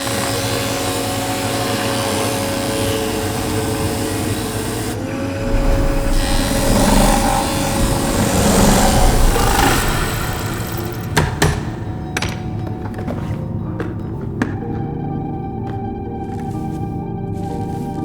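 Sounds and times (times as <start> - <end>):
power tool cutting wood: 0.0 - 12.5
low rumble: 5.1 - 11.9.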